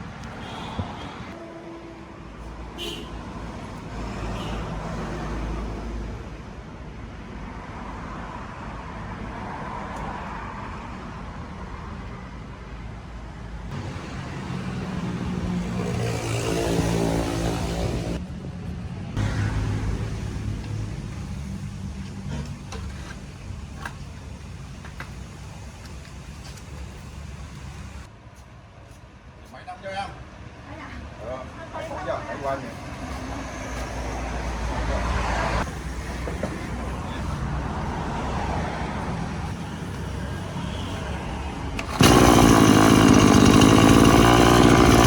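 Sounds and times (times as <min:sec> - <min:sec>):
small engine running: 0:13.7 - 0:18.2, 0:41.8 - 0:45.0.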